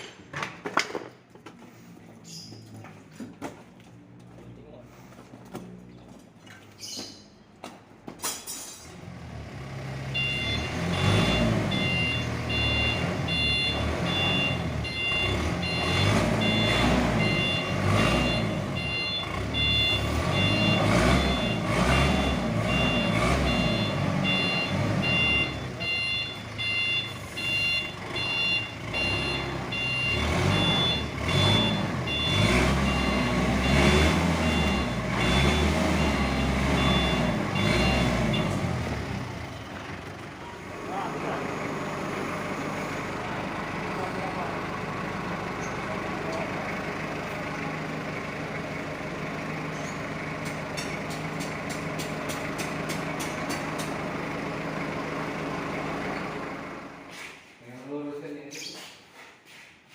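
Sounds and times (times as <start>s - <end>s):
engine running low: 8.2s - 57.5s
vehicle reversing alarm beeping: 9.8s - 39.8s.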